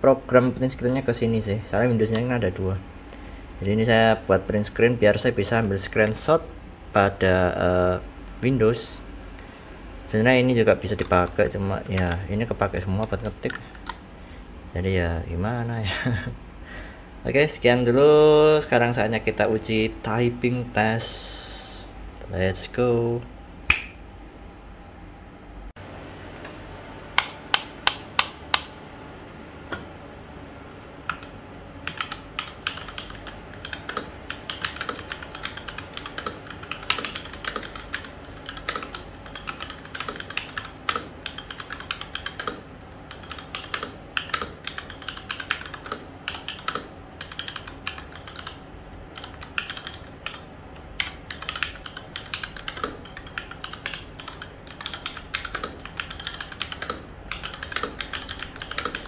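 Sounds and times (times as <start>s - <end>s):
mechanical keyboard typing: 27.2s - 28.7s, 31.1s - 31.3s, 31.9s - 50.4s, 51.0s - 59.0s.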